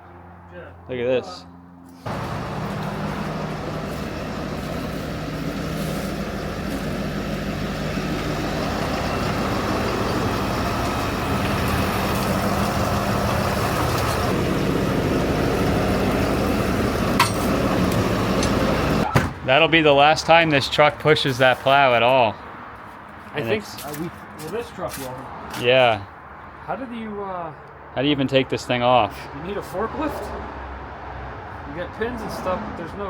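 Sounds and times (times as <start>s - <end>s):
diesel truck engine running: 2.0s - 19.1s.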